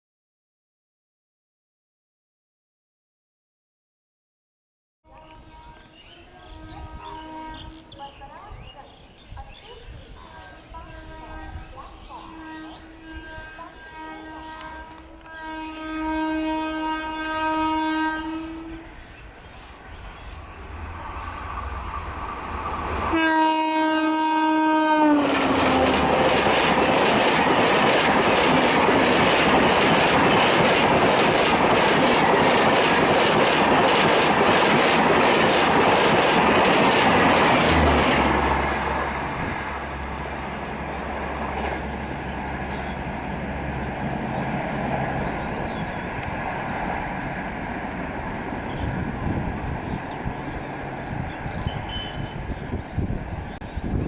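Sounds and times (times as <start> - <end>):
locomotive horn blasts: 5.1 - 8.2, 10.6 - 19.2, 23.0 - 27.3, 51.5 - 52.7
train rumble: 5.1 - 54.0
train wheels clacking over rails: 24.7 - 39.3, 40.6 - 53.9.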